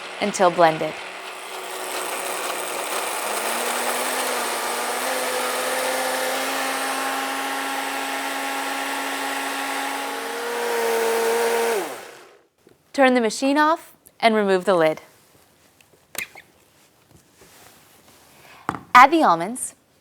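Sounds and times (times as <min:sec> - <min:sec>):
blender motor running: 0:00.0 - 0:12.4.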